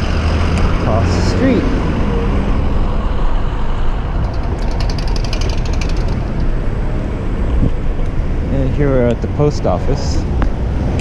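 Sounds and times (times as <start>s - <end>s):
street traffic: 0.0s - 11.0s
wind noise: 0.0s - 11.0s
rapid rattling: 4.1s - 6.6s.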